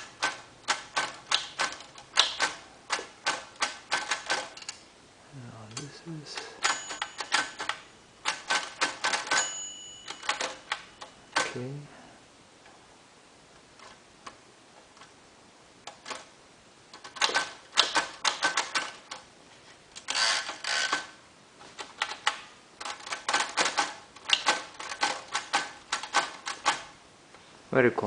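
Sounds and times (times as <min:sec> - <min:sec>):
typewriter keys typing: 0:00.0 - 0:04.8, 0:06.6 - 0:11.6, 0:17.0 - 0:19.2, 0:21.8 - 0:26.9.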